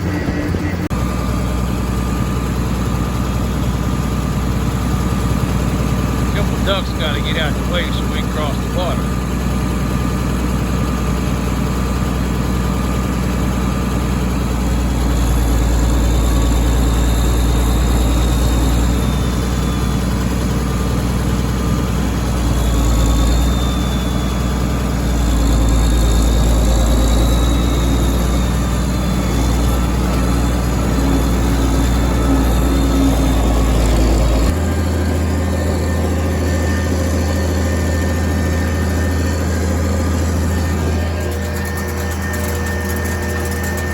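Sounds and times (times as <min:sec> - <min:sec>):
tractor engine droning: 0:00.0 - 0:43.9.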